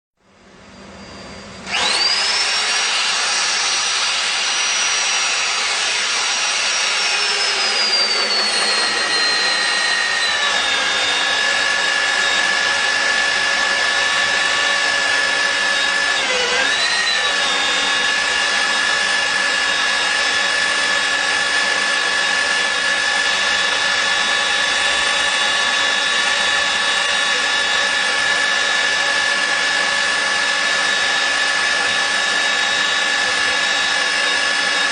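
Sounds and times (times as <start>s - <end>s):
drilling machine motor whine: 0.6s - 34.9s.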